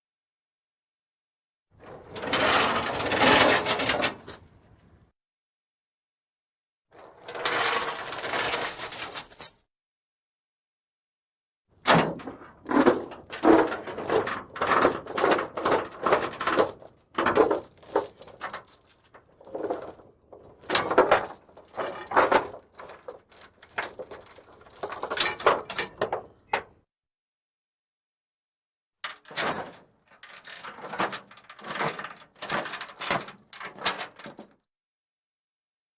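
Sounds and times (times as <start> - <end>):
steel chain clanking and rattling: 1.8 - 4.6, 11.9 - 26.7, 29.2 - 34.2.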